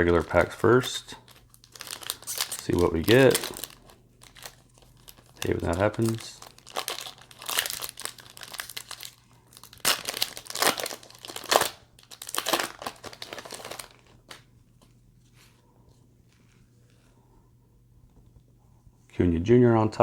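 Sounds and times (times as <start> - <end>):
wrapper being torn and crinkled: 0.0 - 14.4.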